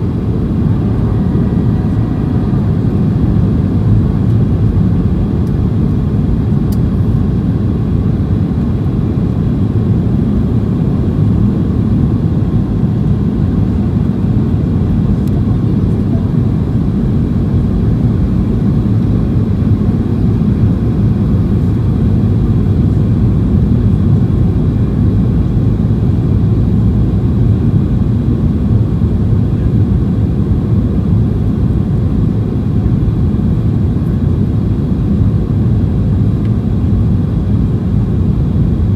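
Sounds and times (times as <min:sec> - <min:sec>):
airplane cabin engine rumble: 0:00.0 - 0:38.9.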